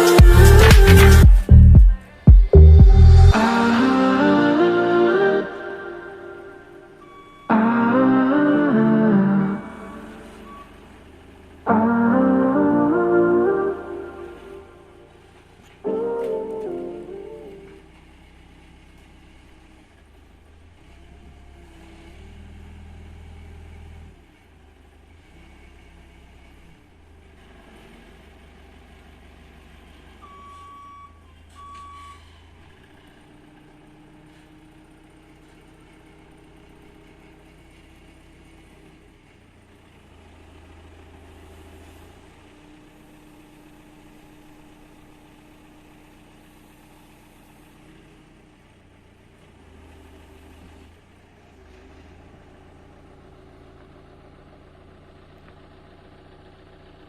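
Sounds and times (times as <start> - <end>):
forklift engine running: 0.0 - 57.0
short beeps: 5.6 - 7.8, 9.5 - 11.0, 30.2 - 32.4.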